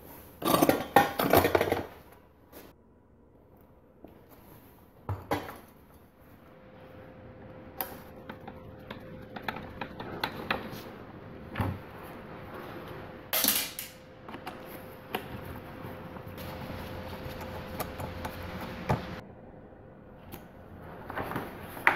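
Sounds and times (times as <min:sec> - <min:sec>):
faint steady hum: 0:00.0 - 0:21.9.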